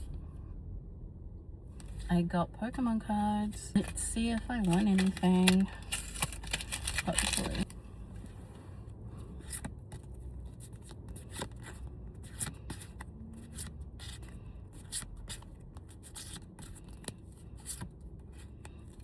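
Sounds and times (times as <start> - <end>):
trading cards being flipped: 3.8 - 7.7, 9.4 - 17.9.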